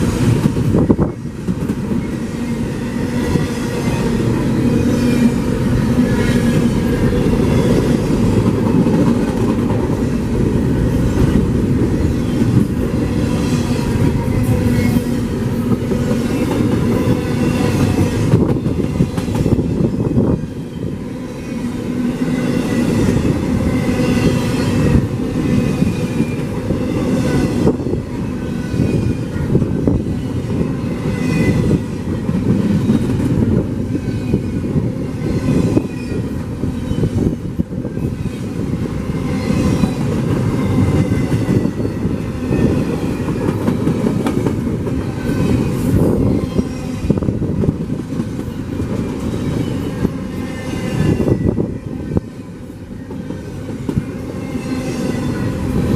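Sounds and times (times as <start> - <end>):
train wheels clicking over rail joints: 39.7 - 50.2.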